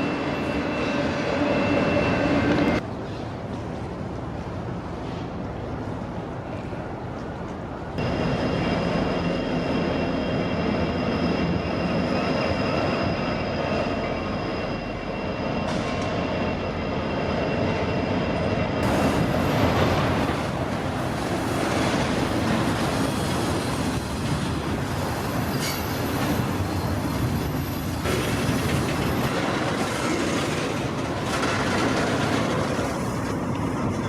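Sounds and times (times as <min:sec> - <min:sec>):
high wheel squeal: 0:00.0 - 0:02.8, 0:08.0 - 0:20.2, 0:21.8 - 0:32.0
train wheels rumbling on rail: 0:00.0 - 0:34.0.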